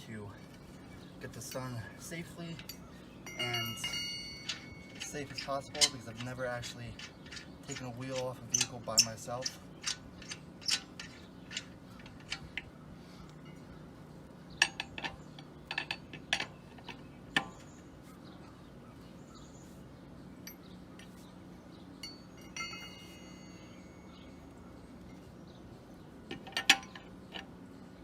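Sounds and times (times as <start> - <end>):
ringing metal clink: 2.6 - 12.4, 20.4 - 21.1, 22.0 - 24.5
lug wrench clicking: 2.6 - 12.7, 14.6 - 17.7.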